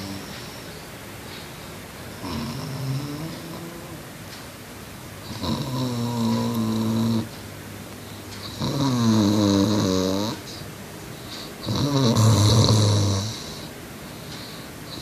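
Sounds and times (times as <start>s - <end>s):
boy snoring: 2.2s - 4.0s, 5.4s - 7.3s, 8.5s - 10.6s, 11.6s - 13.7s.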